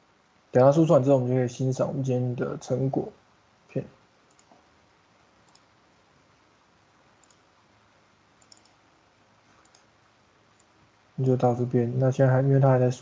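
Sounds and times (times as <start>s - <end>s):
computer mouse clicks: 4.2s - 4.7s, 5.4s - 5.8s, 7.2s - 7.5s, 8.4s - 8.8s, 9.5s - 9.9s.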